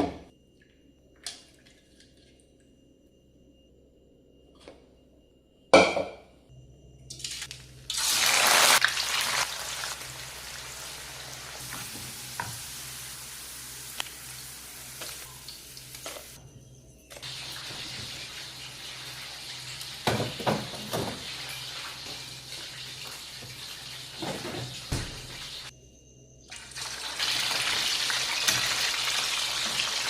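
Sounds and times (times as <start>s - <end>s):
food sizzling in hot oil: 7.2s - 16.4s, 17.2s - 25.7s, 26.5s - 30.0s.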